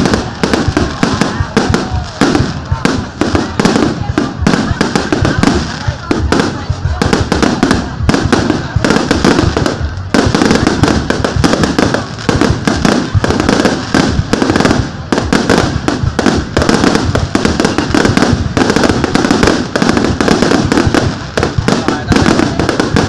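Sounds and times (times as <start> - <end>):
fireworks bangs and crackles: 0.0 - 23.0.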